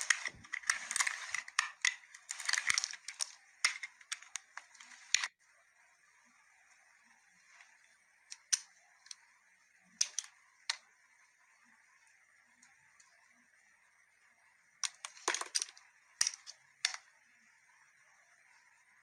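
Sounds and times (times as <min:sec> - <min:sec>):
blade scraping soap: 0:00.0 - 0:05.3.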